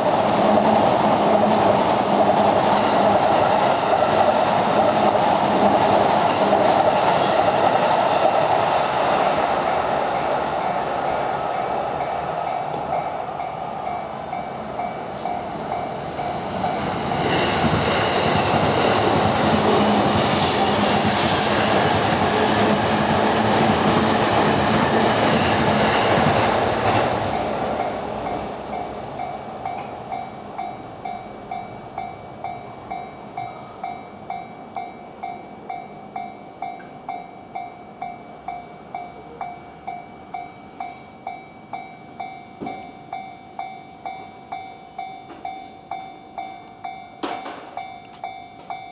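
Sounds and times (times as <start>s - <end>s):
train wheels on rail: 0.0s - 48.9s
level crossing bell ringing: 8.5s - 17.0s.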